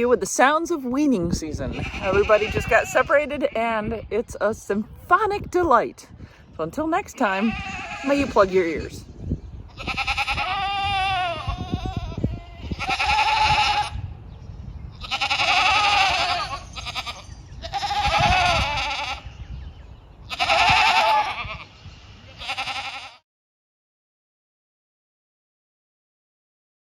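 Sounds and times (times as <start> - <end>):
goats bleating loudly: 1.7 - 4.0, 7.3 - 8.9, 9.7 - 14.0, 15.0 - 19.3, 20.3 - 23.2.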